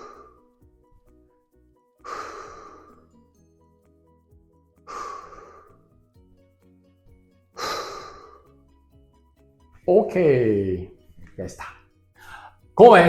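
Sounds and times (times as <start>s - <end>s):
deep exhalations: 0.0s - 0.5s, 2.1s - 3.1s, 4.9s - 5.8s, 7.6s - 8.5s, 12.2s - 12.6s
soft background music: 0.0s - 13.0s.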